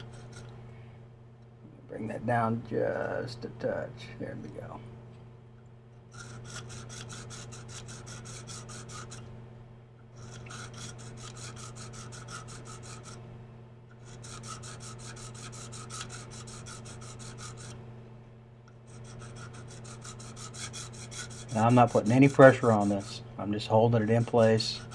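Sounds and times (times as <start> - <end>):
sharpening rod scraping knife: 0.0 - 0.5, 6.1 - 9.2, 10.2 - 13.2, 14.0 - 17.8, 18.9 - 23.1, 24.1 - 24.9.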